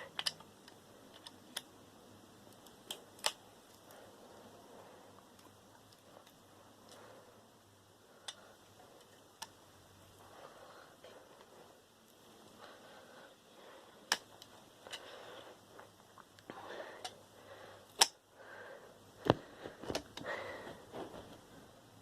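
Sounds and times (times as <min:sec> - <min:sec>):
faint handling noise: 0:19.2 - 0:21.8.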